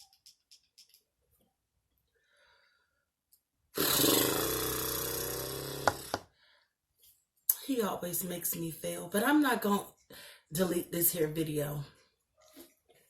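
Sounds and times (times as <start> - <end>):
person burping loudly: 3.8 - 6.2.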